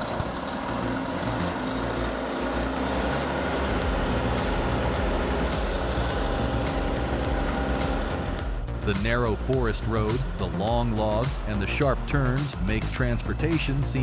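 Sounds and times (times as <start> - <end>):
truck engine running under load: 0.0 - 8.4.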